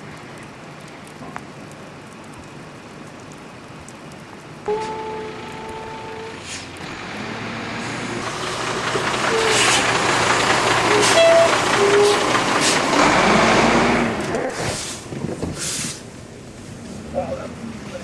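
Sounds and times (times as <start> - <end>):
heavy vehicle on wet road: 4.2 - 18.0.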